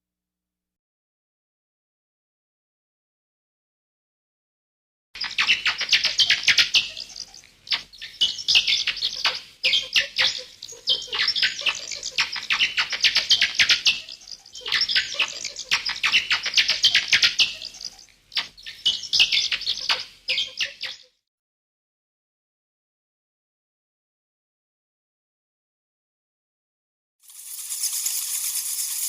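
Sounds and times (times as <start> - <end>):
animal chirping calls: 5.2 - 21.1.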